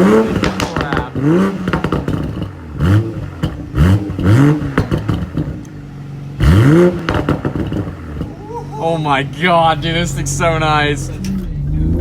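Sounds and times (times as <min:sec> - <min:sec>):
car engine revving: 0:00.0 - 0:12.0
exhaust crackles and pops: 0:00.0 - 0:12.0.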